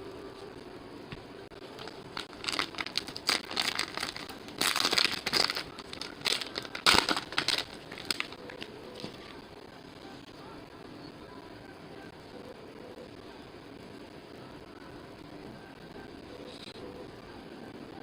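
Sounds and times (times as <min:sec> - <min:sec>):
wrapper and cards crinkling: 0:01.7 - 0:09.4.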